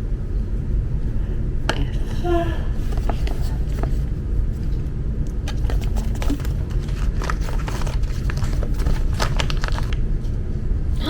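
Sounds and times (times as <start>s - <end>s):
steady low hum: 0.0s - 11.0s
packaging crinkling and rustling: 2.8s - 10.4s.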